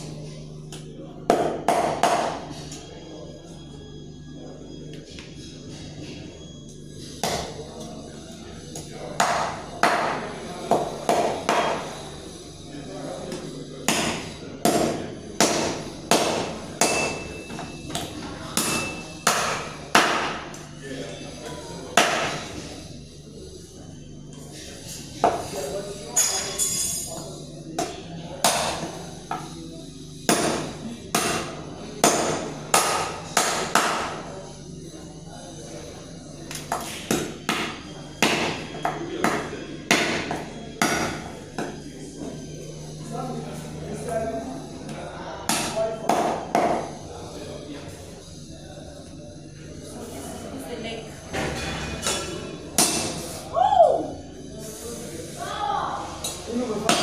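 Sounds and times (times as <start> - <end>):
chopping through bone: 13.9 - 17.2, 18.6 - 20.4, 22.0 - 22.4, 30.3 - 34.2, 36.7 - 41.7
knife chopping through bone: 13.9 - 17.2, 30.3 - 34.1.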